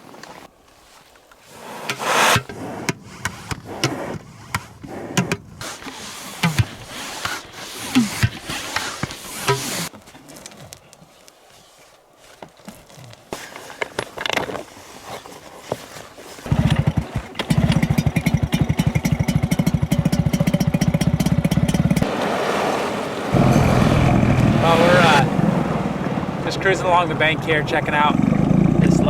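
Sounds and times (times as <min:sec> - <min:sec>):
outboard motor puttering: 0:16.5 - 0:29.0.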